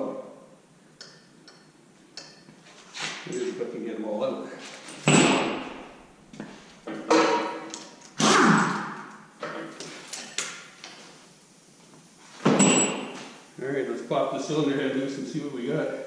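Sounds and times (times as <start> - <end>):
metallic knocks and clanks: 4.9 - 5.9, 6.8 - 7.9, 12.5 - 13.2.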